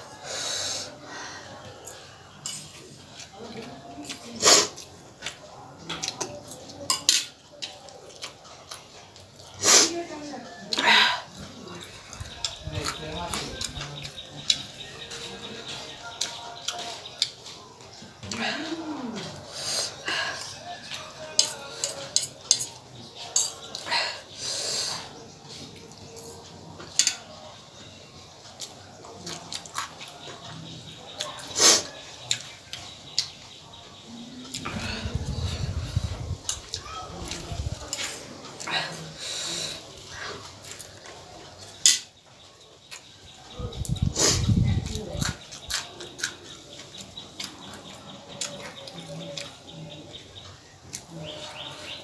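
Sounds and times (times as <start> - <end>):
long hissing breath: 0.2 - 1.6, 23.9 - 25.2
cutlery clinking on a plate: 1.9 - 4.3, 5.3 - 9.2, 20.8 - 23.8, 26.2 - 27.4, 40.6 - 42.1.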